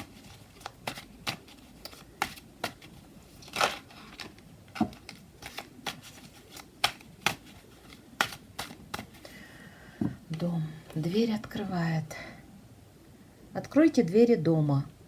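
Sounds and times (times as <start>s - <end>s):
cards snapping and clicking: 0.0s - 9.2s.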